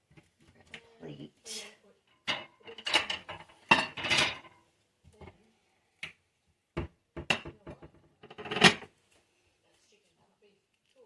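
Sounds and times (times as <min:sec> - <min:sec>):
utensil and dishes clinking: 0:02.2 - 0:04.5.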